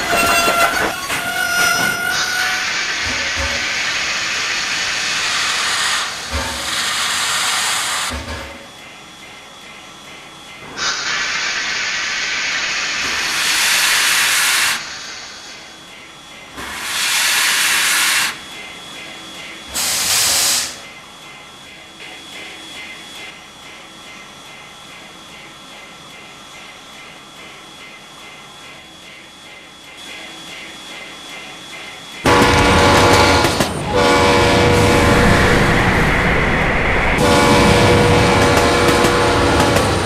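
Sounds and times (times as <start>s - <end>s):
steam locomotive hissing steam: 1.8s - 8.2s, 10.6s - 16.0s, 16.6s - 18.5s, 19.1s - 20.9s
steam blasts: 10.8s - 15.6s, 16.6s - 18.4s.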